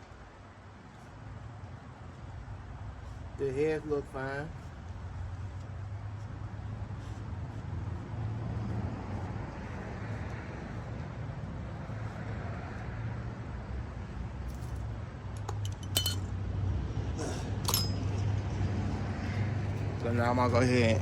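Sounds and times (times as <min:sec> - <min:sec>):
metal parts clinking: 0:15.4 - 0:16.3, 0:17.6 - 0:18.3.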